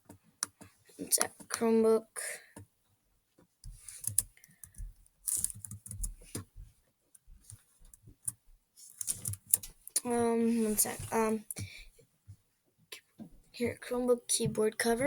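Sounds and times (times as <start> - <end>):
laptop keyboard typing: 3.6 - 6.5, 7.4 - 10.2.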